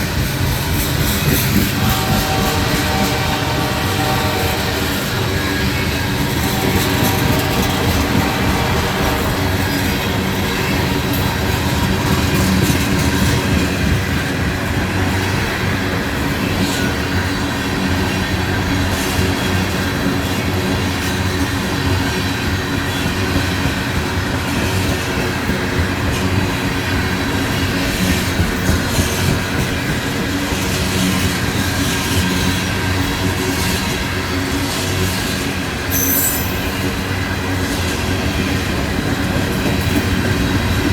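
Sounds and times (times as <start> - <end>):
train wheels rumbling on rail: 0.0 - 40.9
high wheel squeal: 30.6 - 37.0.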